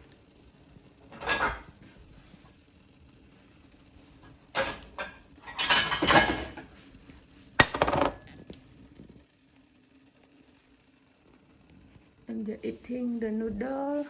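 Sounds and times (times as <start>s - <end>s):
dishes and cutlery clattering: 1.1s - 1.8s, 4.5s - 6.7s.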